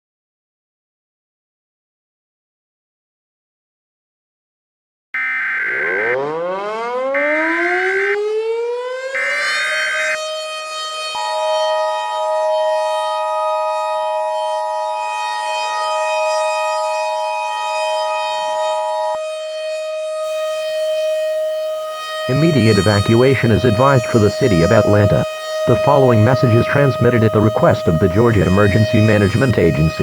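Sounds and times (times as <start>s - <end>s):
screeching data bursts: 5.2s - 6.3s, 9.2s - 10.2s, 20.3s - 30.0s
two-tone attention signal: 5.2s - 8.2s, 9.2s - 10.2s, 20.3s - 30.0s
siren wailing: 5.2s - 30.0s.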